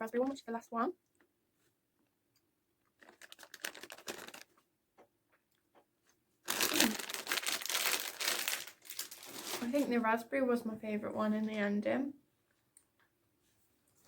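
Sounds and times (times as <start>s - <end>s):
plastic bag crinkling: 2.8s - 4.6s, 6.4s - 10.0s.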